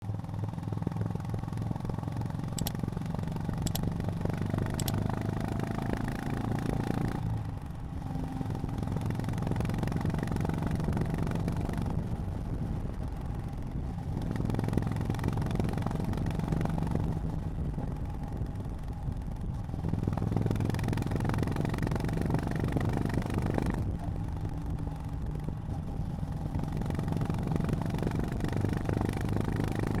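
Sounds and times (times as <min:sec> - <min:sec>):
motorcycle engine running: 0:00.0 - 0:30.0
light ticks: 0:02.6 - 0:02.8, 0:03.6 - 0:03.9.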